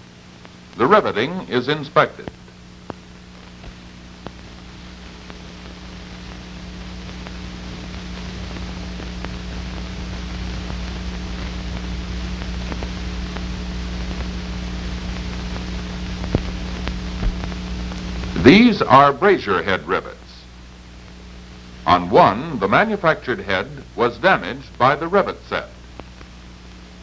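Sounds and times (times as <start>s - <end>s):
film soundtrack hiss: 0.0s - 27.0s
mains hum: 0.0s - 27.0s
faint clicks: 25.8s - 26.9s.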